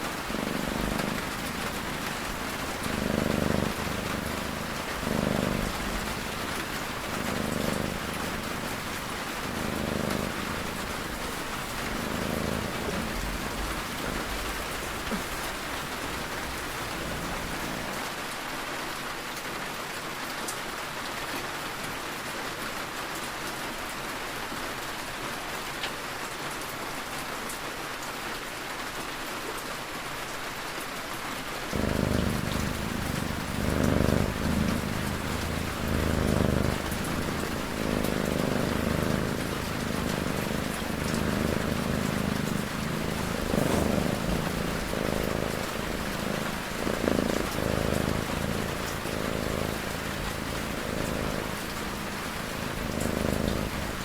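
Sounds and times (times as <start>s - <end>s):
cat snoring: 0.0s - 18.1s, 31.7s - 54.0s
steady rain: 0.0s - 54.0s.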